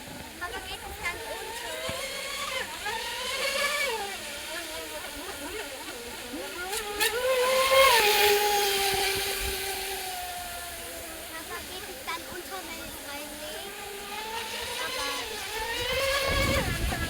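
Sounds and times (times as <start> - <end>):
toy boat motor whining: 0.0 - 17.0.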